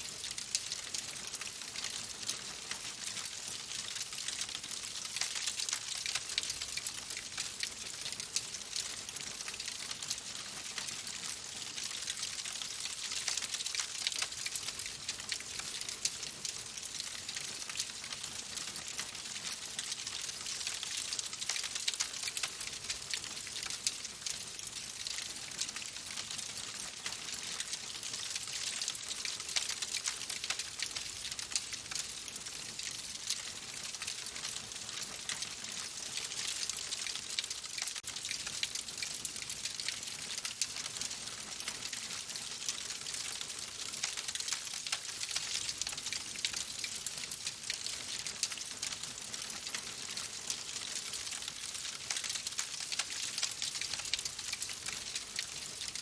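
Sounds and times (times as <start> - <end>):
wood fire crackling: 27.8 - 31.5.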